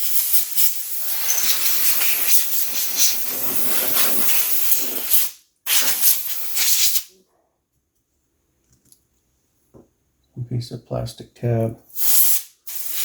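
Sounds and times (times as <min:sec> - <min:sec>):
compressed air blasts hissing: 0:00.0 - 0:07.1, 0:11.9 - 0:13.0.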